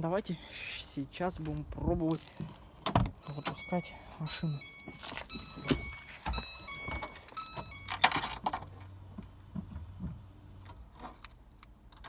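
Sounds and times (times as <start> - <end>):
car keys clinking: 3.2 - 8.5.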